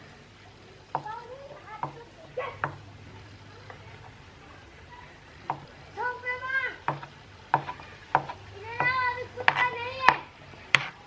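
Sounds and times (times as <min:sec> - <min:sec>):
sharp knocks: 0:06.9 - 0:10.2.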